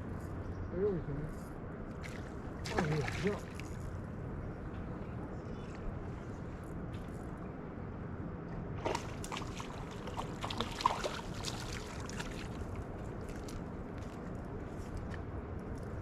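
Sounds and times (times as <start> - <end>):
river water wash: 2.0 - 4.0, 8.5 - 15.2
fish splashing at water surface: 8.8 - 12.6.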